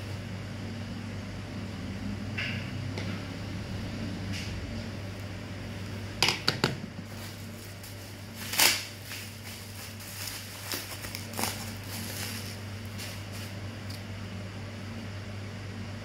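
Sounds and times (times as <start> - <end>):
fan hum: 0.0 - 16.0
rustling: 7.1 - 13.6.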